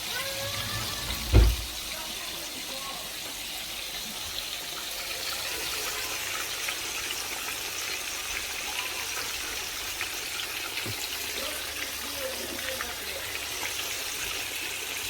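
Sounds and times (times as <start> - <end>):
food sizzling in hot oil: 0.0 - 15.0.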